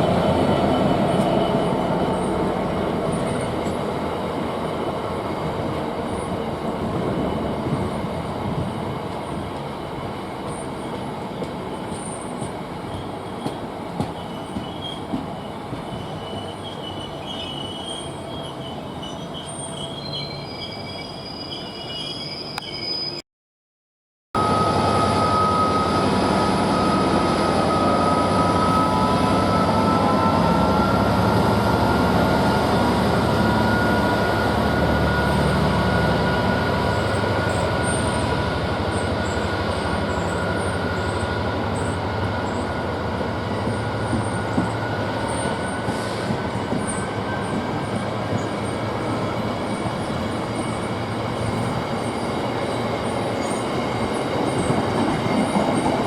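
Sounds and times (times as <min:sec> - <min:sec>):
freight train rumbling on rails: 0:00.0 - 0:22.7, 0:24.4 - 0:56.0
high wheel squeal: 0:11.7 - 0:23.2, 0:32.7 - 0:43.0.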